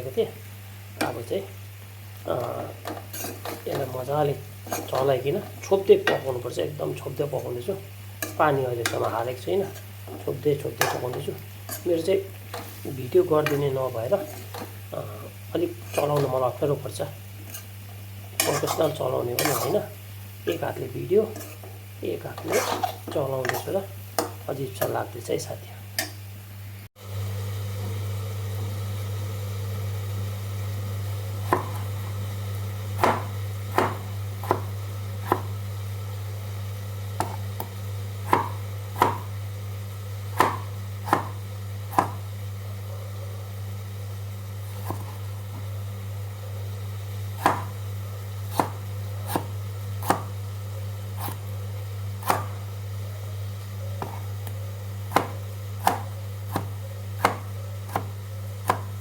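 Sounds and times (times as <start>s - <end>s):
steady low hum: 0.0s - 59.0s
knife chopping on cutting board: 31.4s - 31.9s, 33.0s - 35.6s, 37.2s - 39.3s, 40.3s - 42.3s, 44.8s - 45.2s, 47.4s - 47.8s, 48.5s - 50.4s, 51.2s - 51.4s, 52.2s - 52.6s, 54.0s - 54.3s, 55.1s - 59.0s.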